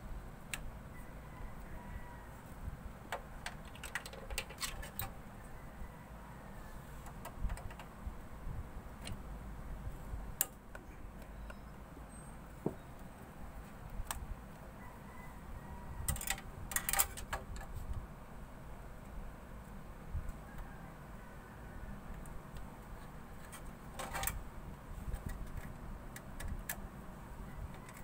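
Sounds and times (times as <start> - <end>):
hands clicking on computer parts: 3.1 - 5.2, 7.0 - 8.0, 16.1 - 17.7.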